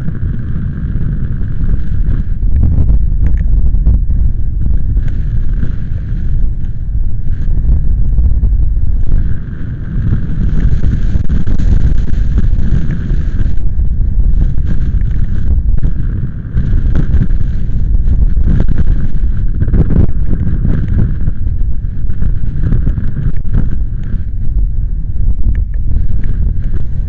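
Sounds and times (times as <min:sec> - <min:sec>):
storm wind buffeting microphone: 0:00.0 - 0:27.0.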